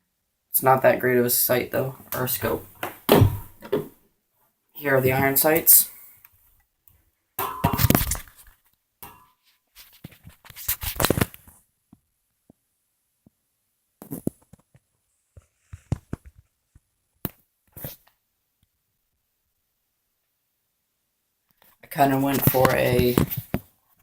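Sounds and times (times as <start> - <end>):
plastic scraping and rustling: 7.6 - 8.7.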